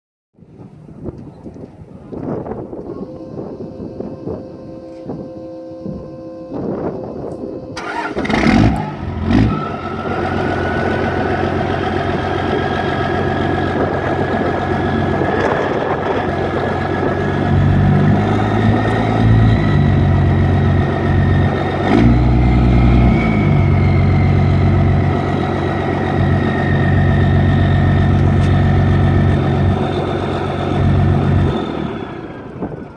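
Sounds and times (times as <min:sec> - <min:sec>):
high turbo whistle: 0:02.9 - 0:32.7
diesel engine idling and revving: 0:06.6 - 0:32.9.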